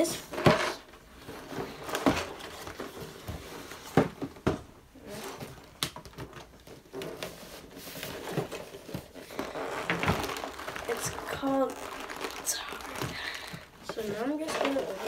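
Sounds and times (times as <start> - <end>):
light rustling and crinkling: 5.0 - 15.0.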